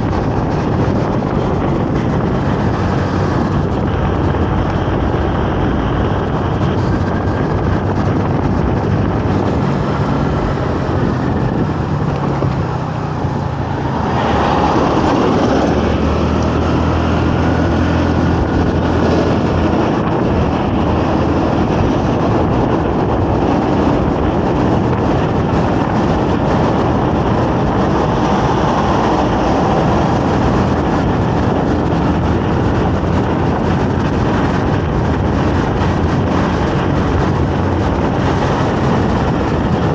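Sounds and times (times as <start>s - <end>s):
motorcycle engine running: 0.0s - 39.9s
wind rushing: 0.0s - 39.9s.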